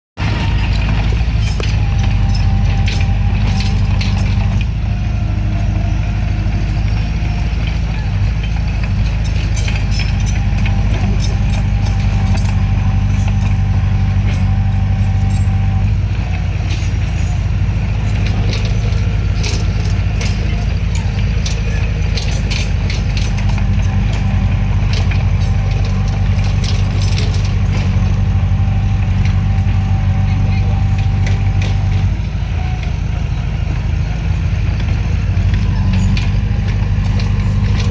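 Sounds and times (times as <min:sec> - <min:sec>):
metallic clanks and clicks: 0:00.2 - 0:04.7, 0:06.6 - 0:15.8, 0:16.6 - 0:32.1, 0:35.4 - 0:37.9
diesel engine running: 0:00.2 - 0:37.9.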